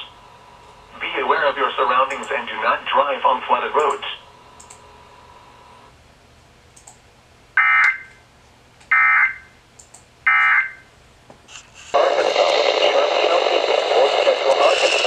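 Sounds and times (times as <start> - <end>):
radio static: 0.9 - 4.3, 11.5 - 15.0.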